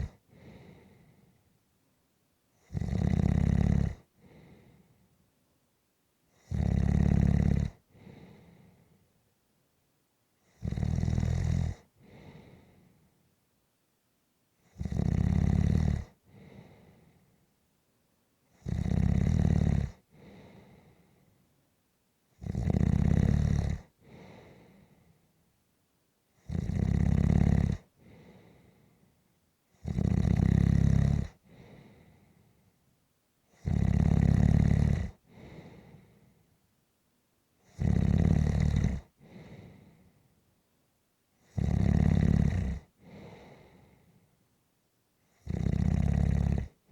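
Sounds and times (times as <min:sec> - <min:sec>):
soft short breath: 0:00.2 - 0:01.6, 0:04.2 - 0:05.2, 0:07.9 - 0:09.2, 0:12.0 - 0:13.2, 0:16.3 - 0:17.4, 0:20.1 - 0:21.5, 0:24.0 - 0:25.3, 0:28.0 - 0:29.2, 0:31.5 - 0:32.8, 0:35.3 - 0:36.6, 0:39.2 - 0:40.4, 0:43.0 - 0:44.4
person snoring: 0:02.7 - 0:04.0, 0:06.5 - 0:07.8, 0:22.4 - 0:24.6, 0:26.5 - 0:28.4, 0:29.8 - 0:32.0, 0:33.6 - 0:36.1, 0:37.8 - 0:39.8, 0:41.5 - 0:43.8, 0:45.4 - 0:46.8.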